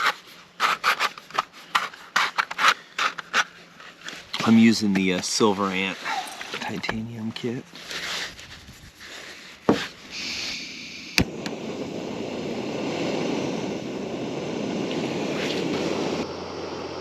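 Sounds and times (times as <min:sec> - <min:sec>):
gas hissing from valve: 0:09.7 - 0:16.3
gas burner running: 0:10.1 - 0:17.0.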